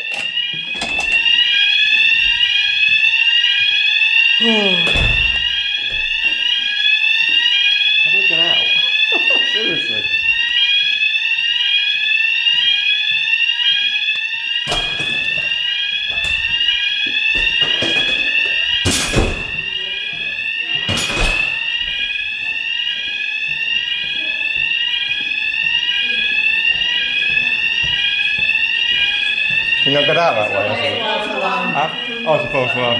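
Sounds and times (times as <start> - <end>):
fire alarm whooping: 0.0 - 32.9.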